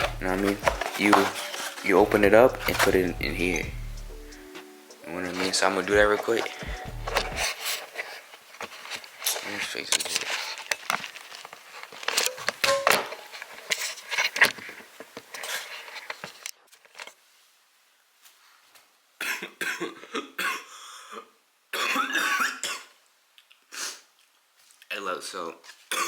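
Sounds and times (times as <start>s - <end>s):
kitchen items clicking and rustling: 0.0s - 3.1s, 5.1s - 16.4s
person coughing hard: 21.8s - 22.9s.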